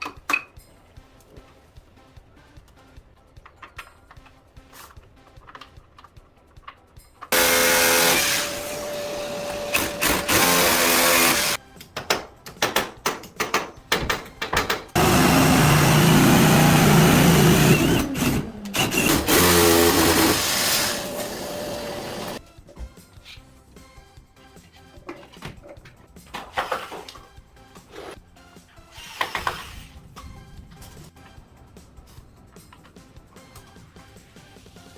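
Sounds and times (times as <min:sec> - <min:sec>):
electric power tool motor whining: 0:07.4 - 0:11.6, 0:15.0 - 0:22.4.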